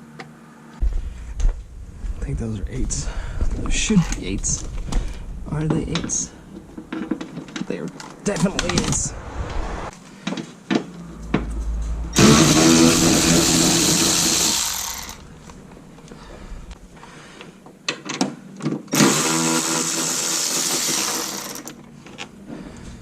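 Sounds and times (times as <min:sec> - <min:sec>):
power drill whirring: 0:12.2 - 0:15.3, 0:18.9 - 0:21.8.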